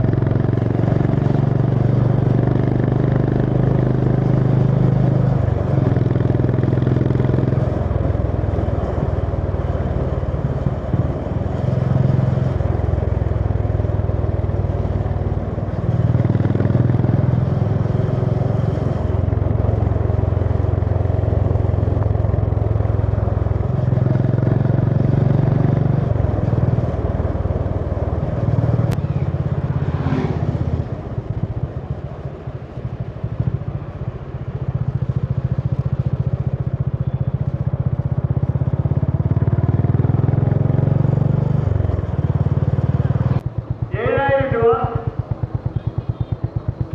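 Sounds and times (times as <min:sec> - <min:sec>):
motorcycle engine running: 0:00.0 - 0:46.9.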